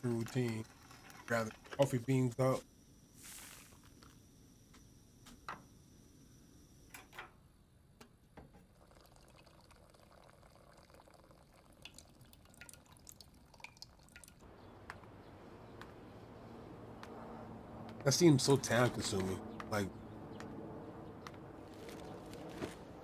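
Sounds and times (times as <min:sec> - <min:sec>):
water dripping and pouring: 0:08.6 - 0:15.1.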